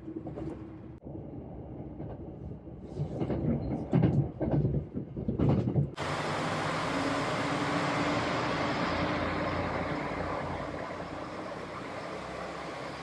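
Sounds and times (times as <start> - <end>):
vehicle running noise: 6.0 - 13.0.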